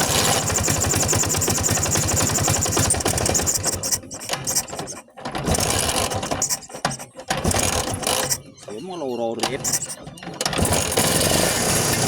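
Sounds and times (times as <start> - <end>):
scooter engine running: 0.0 - 3.6, 10.5 - 12.0.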